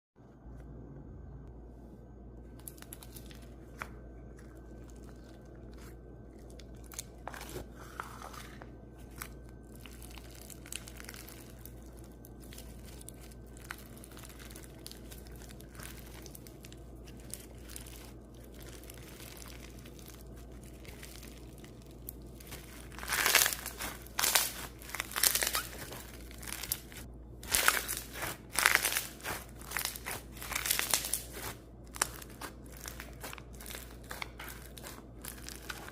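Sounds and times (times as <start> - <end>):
slime clicking and squishing: 9.1 - 35.9.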